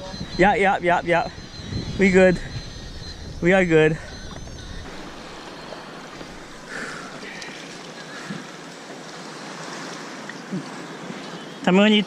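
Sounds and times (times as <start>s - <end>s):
wind on microphone: 0.0s - 7.4s
water washing around a kayak: 4.8s - 12.0s.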